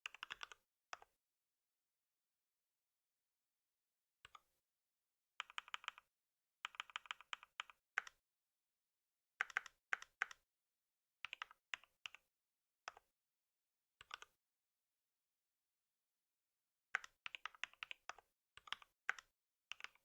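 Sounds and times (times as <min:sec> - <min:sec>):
keyboard typing: 0:05.4 - 0:06.0, 0:06.7 - 0:08.2.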